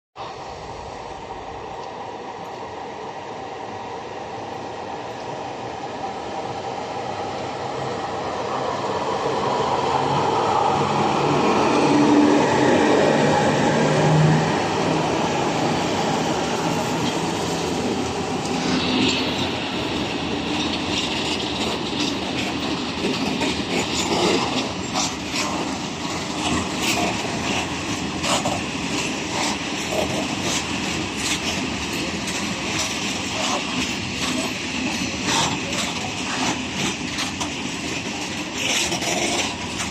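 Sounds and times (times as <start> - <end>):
electric locomotive hum: 0.2 - 39.9
train wheels clicking over rail joints: 16.6 - 39.9.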